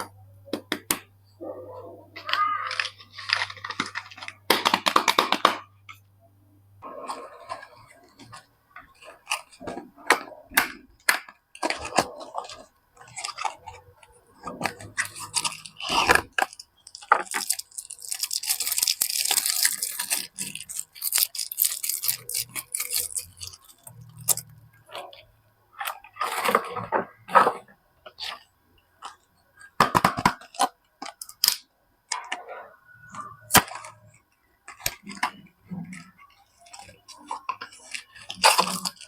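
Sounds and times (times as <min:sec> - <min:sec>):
wrapper crinkling: 0:02.2 - 0:05.5, 0:11.6 - 0:24.7, 0:34.7 - 0:39.0
packaging taps and clicks: 0:02.7 - 0:05.6.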